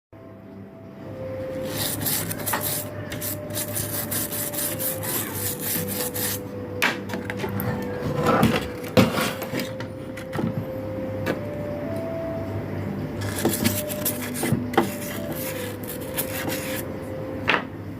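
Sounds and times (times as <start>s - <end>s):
tool scraping a circuit board: 1.5s - 6.4s, 13.2s - 16.8s.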